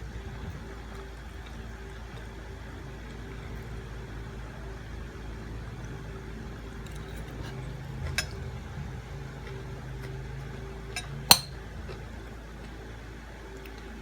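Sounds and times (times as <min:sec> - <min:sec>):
steady low hum: 0:00.0 - 0:14.0
utensils clinking against dish: 0:11.0 - 0:11.6.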